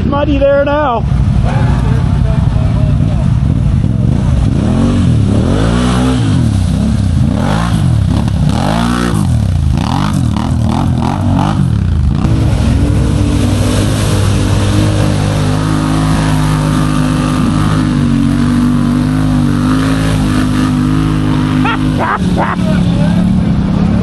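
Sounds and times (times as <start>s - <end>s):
atv engine revving: 0.0s - 24.0s.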